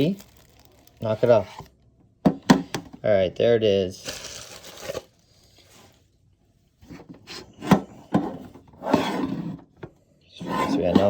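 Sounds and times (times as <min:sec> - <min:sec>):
rubbing scrape on tin: 0:10.4 - 0:11.0.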